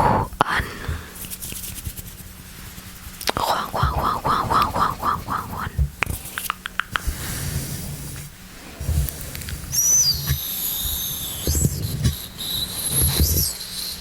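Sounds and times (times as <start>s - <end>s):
wet mouth clicks: 3.2s - 7.1s
high wavering squeak: 9.7s - 14.0s.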